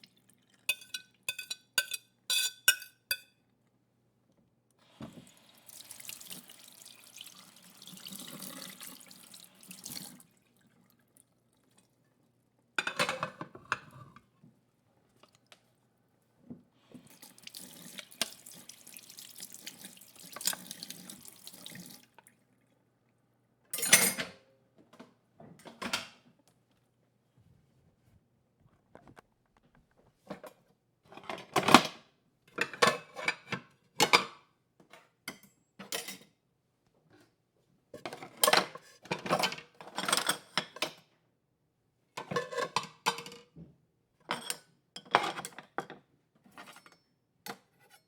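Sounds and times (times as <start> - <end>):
plates clattering in sink: 0.7 - 3.3, 12.8 - 14.2.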